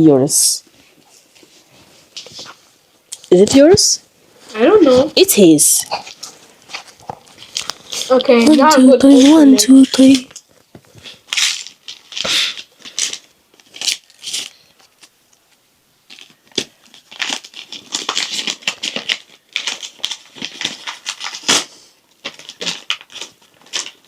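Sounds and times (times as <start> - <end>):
wrapping paper tearing: 11.1 - 15.1, 16.1 - 24.0.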